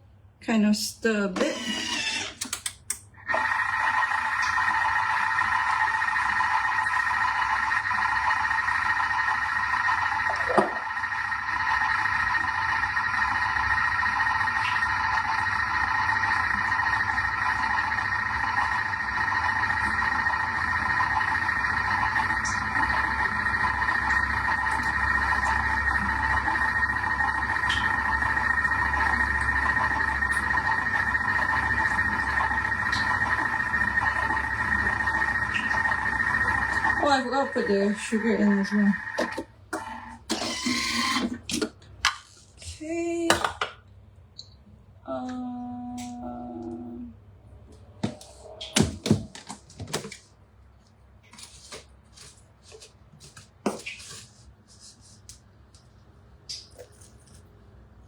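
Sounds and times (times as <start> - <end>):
cooking machine motor running: 1.4 - 42.2.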